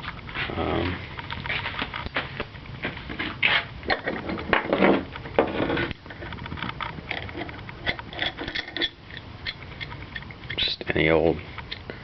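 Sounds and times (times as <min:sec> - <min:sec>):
metal parts scraping: 0:03.4 - 0:10.7.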